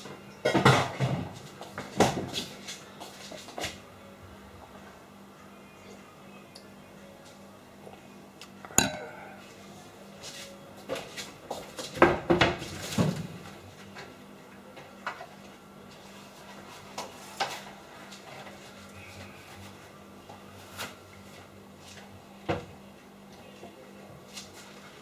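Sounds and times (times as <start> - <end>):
faint steady hum: 3.8 - 10.9.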